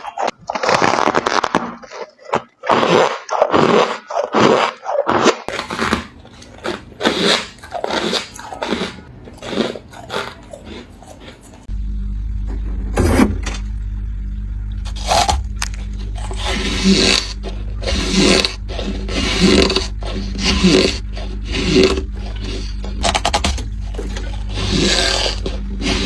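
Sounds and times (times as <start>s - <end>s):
ice being chewed with squeaky crunches: 0.0s - 11.7s, 14.9s - 26.0s
low hum: 11.6s - 26.0s.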